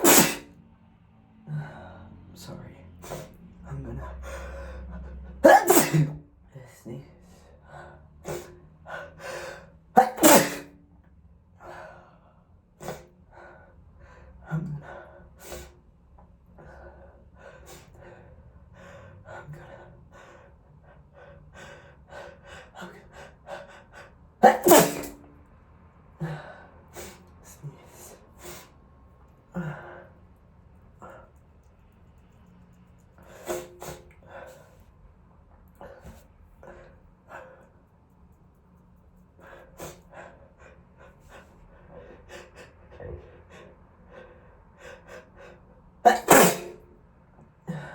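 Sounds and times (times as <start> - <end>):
person sneezing: 0.0 - 0.6, 4.4 - 6.3, 8.3 - 8.6, 9.2 - 10.8, 12.8 - 13.1, 14.6 - 15.7, 24.4 - 25.3, 33.3 - 34.7, 46.0 - 46.9
gasping breaths and sniffs: 4.0 - 6.2, 7.1 - 10.7, 33.0 - 34.9, 35.8 - 38.0, 39.1 - 46.8.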